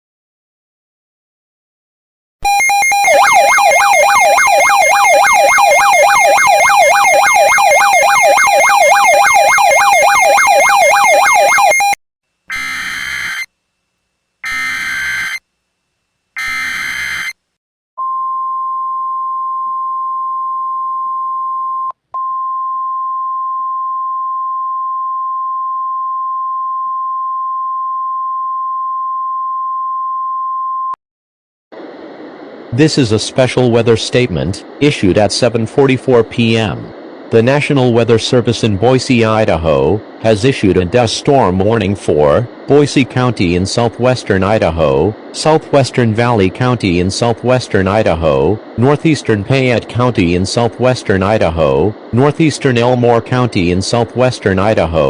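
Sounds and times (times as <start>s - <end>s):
steady high alarm tone: 2.4s - 13.5s, 14.4s - 15.4s, 16.4s - 17.4s
warbling electronic alarm tone: 2.4s - 13.5s, 14.4s - 15.4s, 16.4s - 17.4s
data header bursts: 12.5s - 13.5s, 14.4s - 15.4s, 16.4s - 17.4s.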